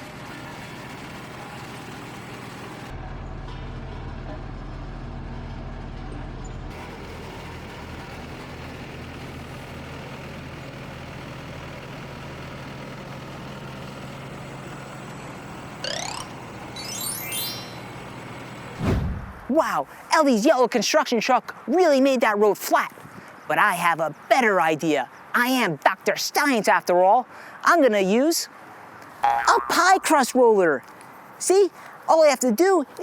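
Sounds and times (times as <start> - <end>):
road roller engine running: 0.0 - 16.8
rising whistle-like sweeps: 15.9 - 18.1.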